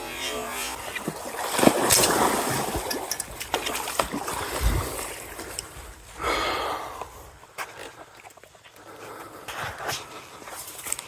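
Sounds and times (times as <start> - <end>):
fish thrashing water splashing: 0.7 - 6.0.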